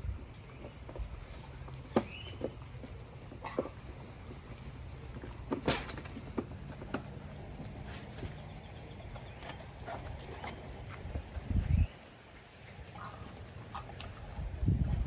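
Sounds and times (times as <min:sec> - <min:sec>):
puppies tapping and knocking: 0:00.0 - 0:11.5.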